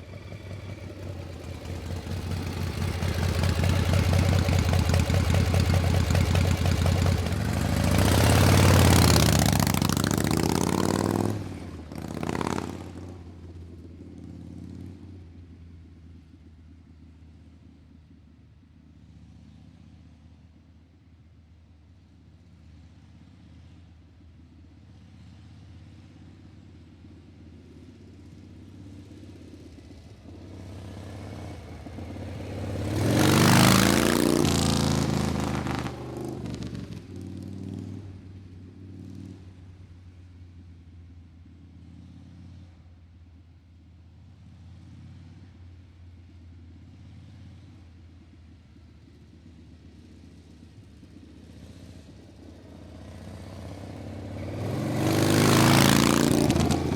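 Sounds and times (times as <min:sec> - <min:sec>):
vehicle engine humming: 0:00.0 - 0:17.1, 0:27.0 - 0:38.9, 0:45.6 - 0:56.9.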